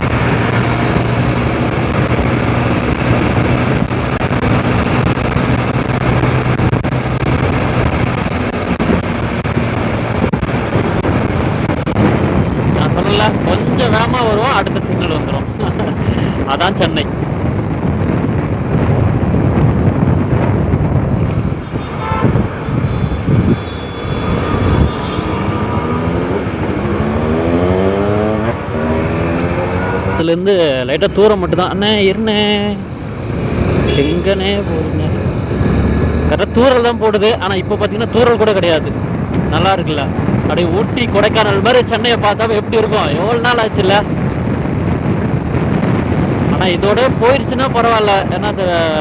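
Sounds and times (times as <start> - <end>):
motorcycle engine running: 0.0 - 12.8, 31.9 - 36.4
road noise: 0.0 - 49.0
wind noise on microphone: 0.0 - 49.0.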